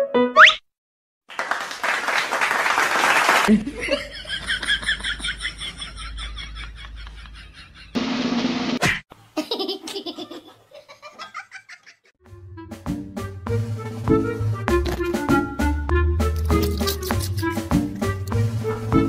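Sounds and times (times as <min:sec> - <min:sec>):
high-pitched laughter: 0:09.4 - 0:12.1.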